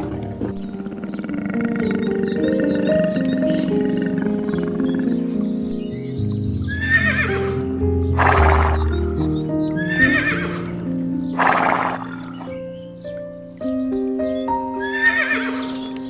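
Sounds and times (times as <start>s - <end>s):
background music sustained notes: 0.0s - 16.0s
horse whinnying: 6.7s - 7.6s, 9.8s - 10.8s, 11.4s - 12.5s, 14.8s - 15.8s.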